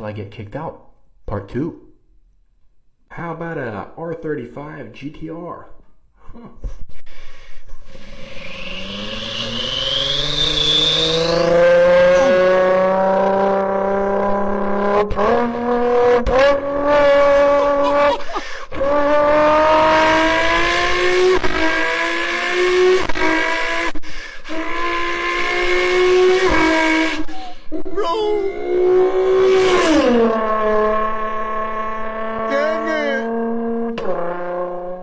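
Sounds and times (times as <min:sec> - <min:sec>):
beatboxer imitating car engine: 0:10.8 - 0:12.9, 0:32.4 - 0:33.4.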